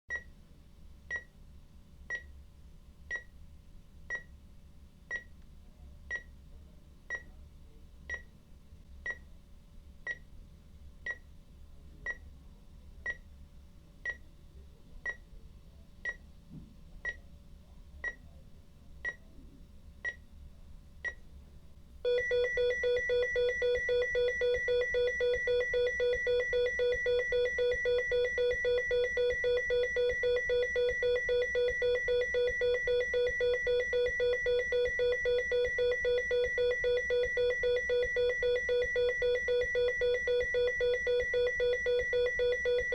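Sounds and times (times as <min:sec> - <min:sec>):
continuous flatline tone: 0:22.1 - 0:42.9
heart monitor beeping: 0:22.1 - 0:42.9.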